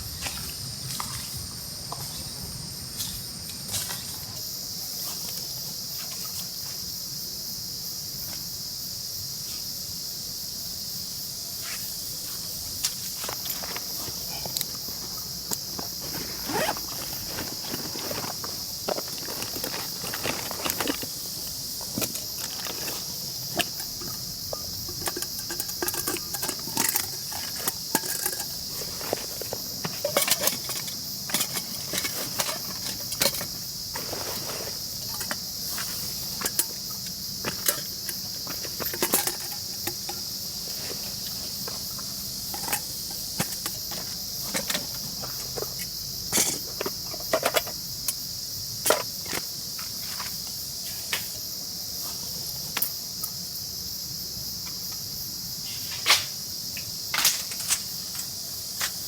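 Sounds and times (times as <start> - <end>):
insect chorus chirring: 0.0 - 59.0.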